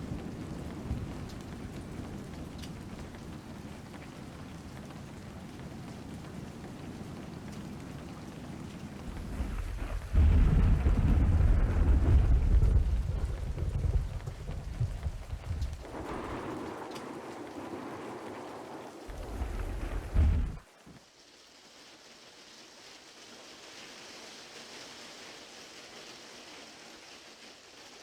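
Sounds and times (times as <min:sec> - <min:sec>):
strong wind gusts: 0:00.0 - 0:20.7
heavy rain: 0:00.0 - 0:28.0
deep rumbling surge: 0:09.1 - 0:16.0, 0:19.1 - 0:20.6.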